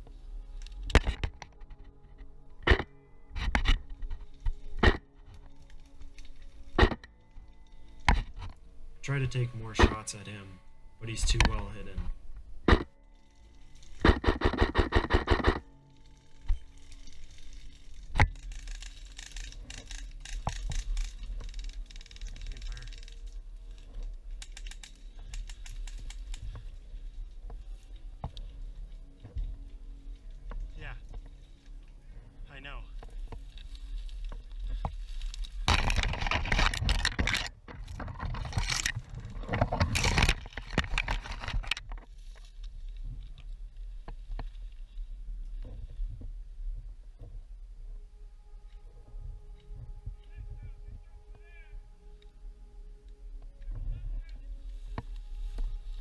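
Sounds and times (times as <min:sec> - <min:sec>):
rustling through brush: 0:10.6 - 0:56.0
gear rattling: 0:12.7 - 0:32.0, 0:32.9 - 0:44.8
airsoft rifle shots: 0:14.0 - 0:15.6
faint fast ticking fire: 0:16.0 - 0:29.1.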